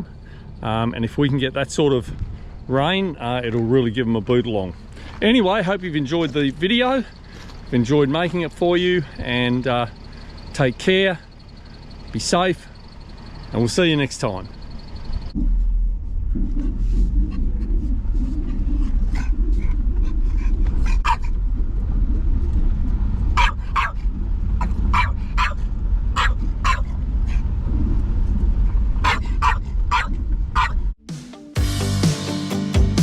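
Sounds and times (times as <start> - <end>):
vehicle engine running: 0.0 - 31.0
dog barking in short yaps: 23.4 - 24.0, 24.9 - 25.6, 26.2 - 26.9, 29.0 - 30.8.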